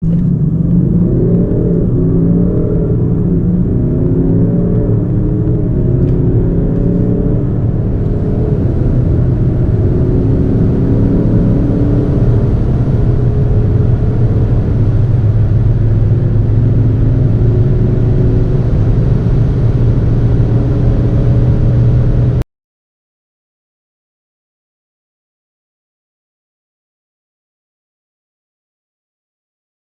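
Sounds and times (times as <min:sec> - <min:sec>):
suv engine accelerating hard: 0:00.0 - 0:22.4.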